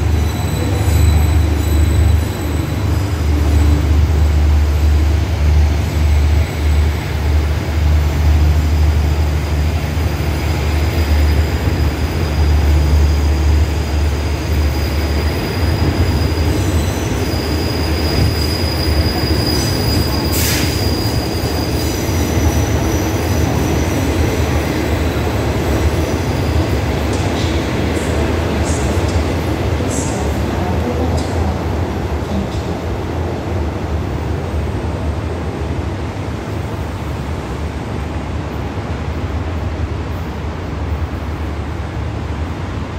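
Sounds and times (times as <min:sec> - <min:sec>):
high wheel squeal: 0:00.0 - 0:04.4, 0:08.4 - 0:23.6
train rumbling: 0:00.0 - 0:42.9.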